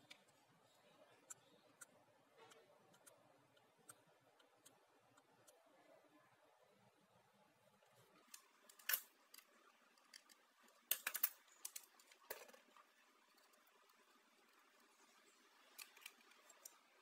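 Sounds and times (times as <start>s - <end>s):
small hard parts clicking: 8.2s - 17.0s.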